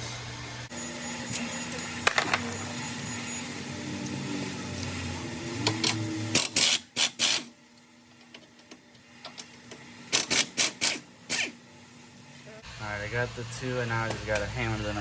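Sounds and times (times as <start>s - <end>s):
ratchet wrench rattling: 10.1s - 11.4s.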